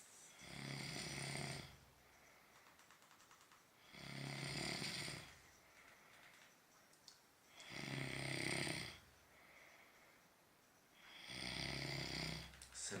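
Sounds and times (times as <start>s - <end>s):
faint breathing: 0.0s - 13.0s
person snoring: 0.3s - 1.8s, 3.8s - 5.4s, 7.5s - 9.1s, 11.0s - 13.0s.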